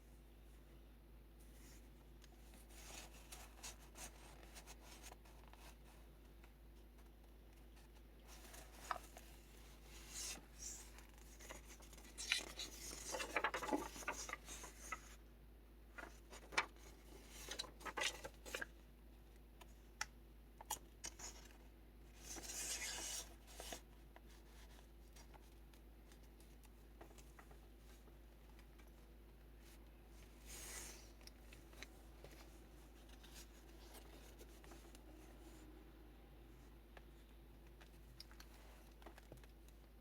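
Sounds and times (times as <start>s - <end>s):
paper pages rustling: 7.7s - 15.2s, 16.0s - 18.7s, 20.7s - 29.0s.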